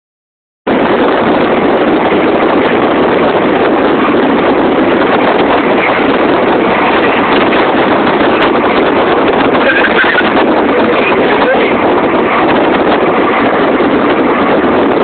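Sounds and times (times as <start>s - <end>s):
wind on microphone: 0.7s - 15.0s.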